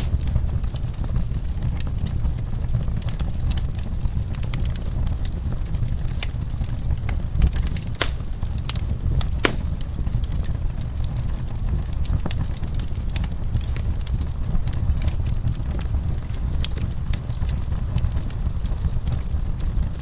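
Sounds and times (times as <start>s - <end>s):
sharp pops and snaps: 0.0s - 0.6s, 7.9s - 10.2s
steady low rumble: 0.0s - 1.0s
fire crackling: 0.0s - 20.0s.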